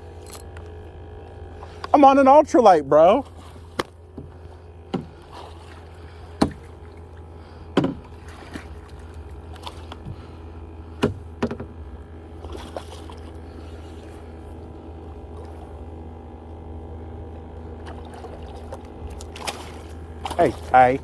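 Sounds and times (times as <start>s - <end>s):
water splashes: 1.6s - 16.4s, 17.4s - 21.0s
knocks on plastic kayak: 3.8s - 5.2s, 6.4s - 6.7s, 7.8s - 8.1s, 11.0s - 11.8s.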